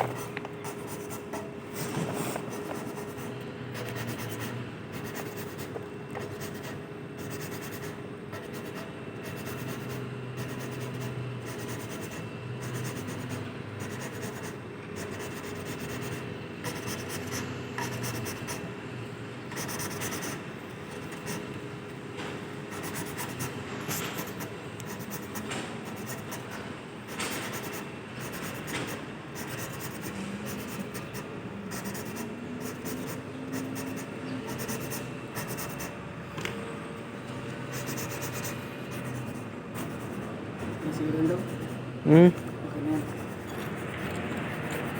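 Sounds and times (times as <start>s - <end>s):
faint steady hum: 0.0s - 44.9s
gritty scratching of valve lapping: 43.0s - 44.9s.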